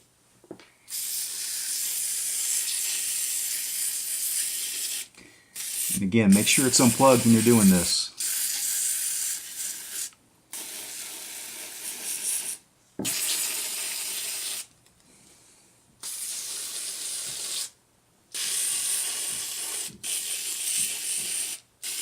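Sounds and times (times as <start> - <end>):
aerosol can spraying: 0.9 - 14.7, 16.0 - 22.0.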